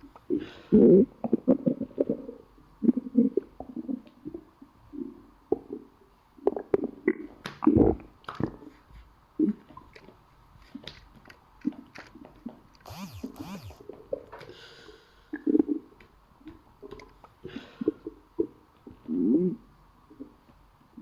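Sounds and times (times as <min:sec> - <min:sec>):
stomach growling and gurgling: 0:00.7 - 0:08.7.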